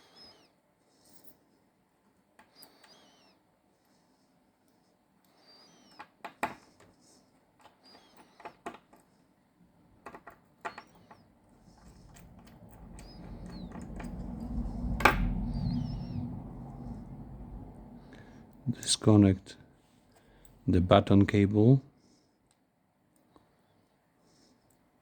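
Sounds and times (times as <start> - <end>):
low hum: 11.5 - 19.6.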